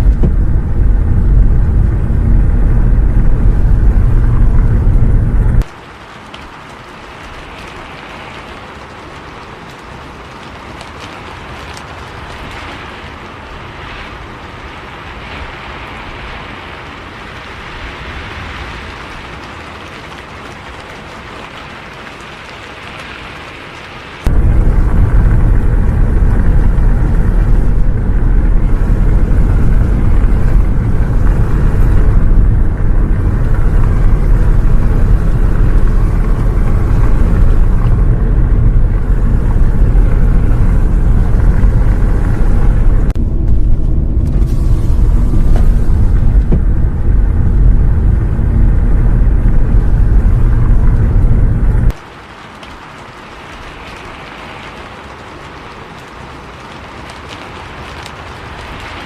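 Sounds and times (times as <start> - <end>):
bus engine and road drone: 0.0 - 21.6, 22.4 - 52.0
rain hissing: 0.0 - 59.0.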